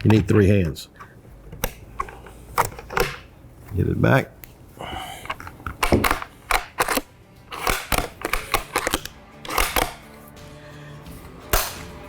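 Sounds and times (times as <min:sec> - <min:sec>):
rifle bolt clicking and clacking: 0:05.3 - 0:10.0.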